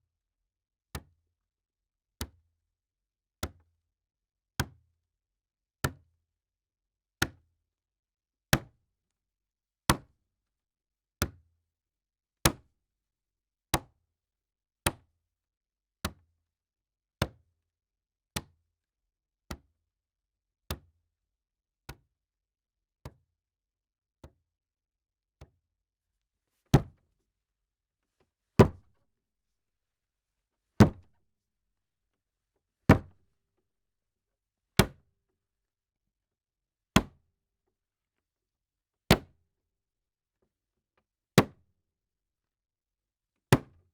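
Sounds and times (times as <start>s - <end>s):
slams on a table: 26.8s - 27.0s, 28.6s - 28.8s, 30.8s - 31.1s, 32.9s - 33.1s.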